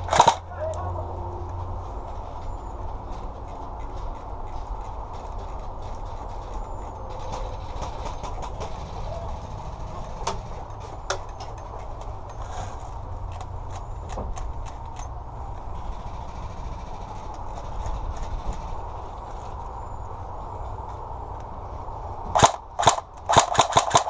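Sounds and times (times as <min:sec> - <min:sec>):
airsoft gun shots: 0:00.0 - 0:00.4, 0:22.3 - 0:24.0
wind rumble on microphone: 0:00.0 - 0:22.4.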